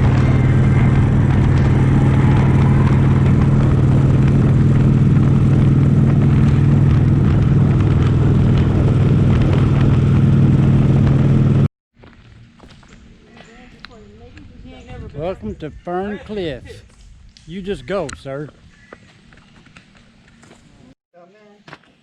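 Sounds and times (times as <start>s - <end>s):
vehicle engine droning: 0.0s - 14.9s
road and wind noise: 0.0s - 21.0s.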